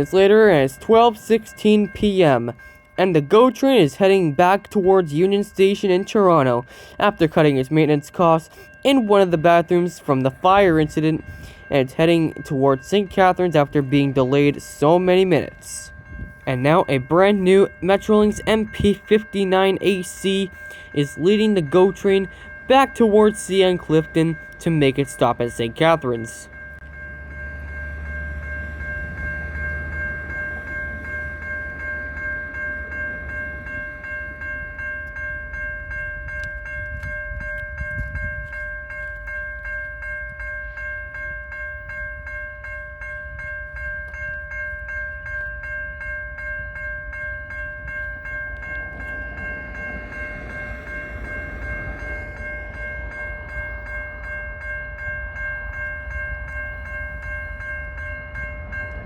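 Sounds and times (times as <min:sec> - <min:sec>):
high ringing tone: 0:00.0 - 0:59.0
train rumble: 0:00.0 - 0:59.0.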